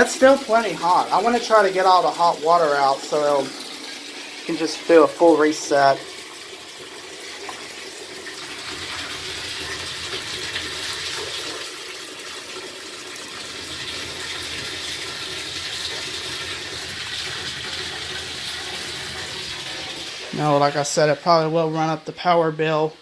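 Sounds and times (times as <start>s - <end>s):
water tap running into basin: 0.0s - 23.0s.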